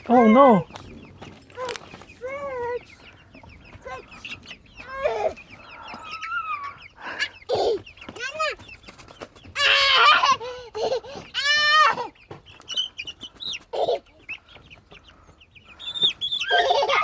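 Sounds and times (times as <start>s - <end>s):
chickens clucking and squawking: 0.0s - 17.0s.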